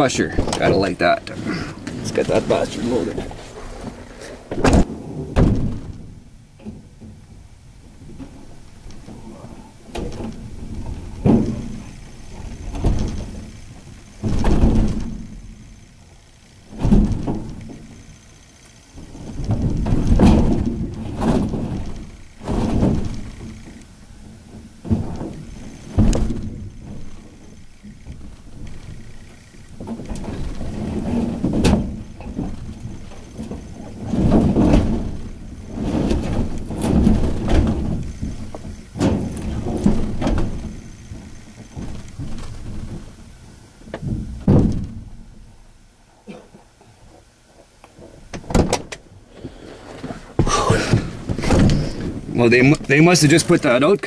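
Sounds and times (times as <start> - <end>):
washing machine thuds and scraping: 1.9 - 7.0, 14.2 - 15.3, 19.2 - 23.7, 29.7 - 43.2, 44.0 - 45.1, 50.1 - 52.7
vehicle door slamming: 3.8 - 7.0, 14.2 - 15.4, 43.9 - 45.2, 48.4 - 49.0, 50.4 - 52.4.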